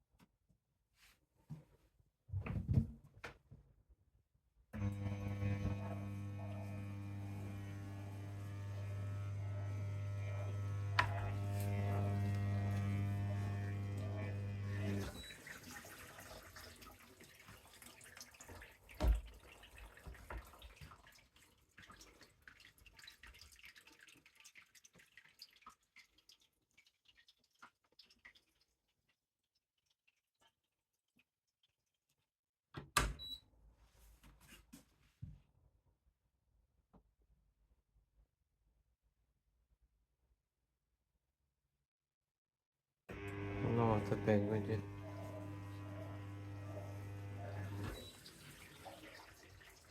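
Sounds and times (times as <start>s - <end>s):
dishwasher electrical hum: 4.8s - 16.2s, 43.1s - 49.9s
dishwasher running: 4.8s - 16.2s, 43.1s - 49.9s.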